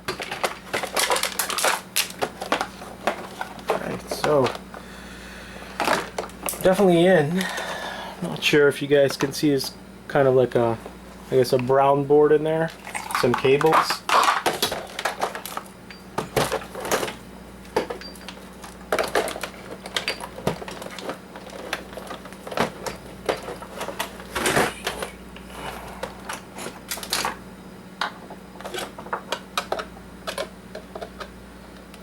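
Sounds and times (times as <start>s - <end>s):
faint steady hum: 0.0s - 32.0s
plastic and metal parts rattling: 0.1s - 4.6s, 13.0s - 25.1s, 28.0s - 31.3s.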